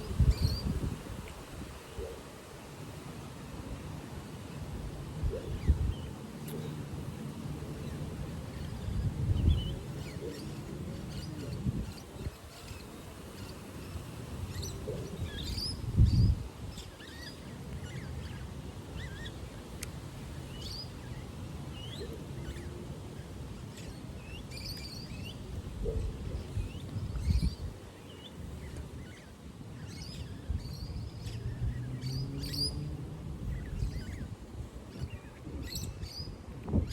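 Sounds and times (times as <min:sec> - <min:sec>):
small birds chirping: 0:00.0 - 0:03.1, 0:05.2 - 0:36.9.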